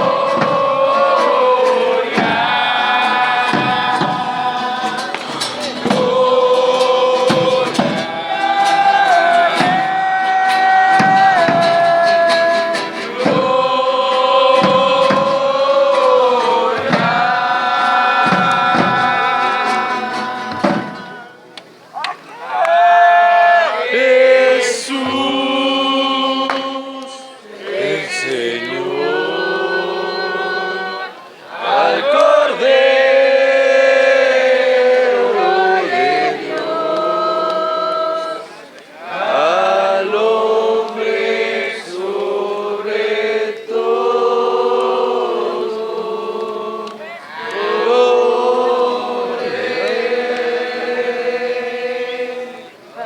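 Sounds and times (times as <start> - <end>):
group of voices chanting: 0.0 - 53.0.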